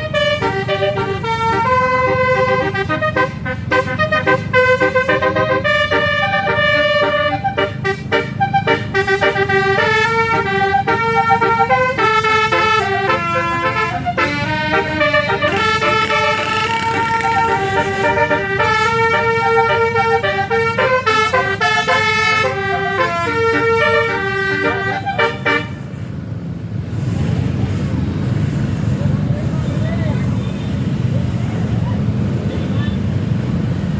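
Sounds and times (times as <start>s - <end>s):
bus horn playing a tune: 0.0s - 26.0s
bus engine running: 0.0s - 33.9s.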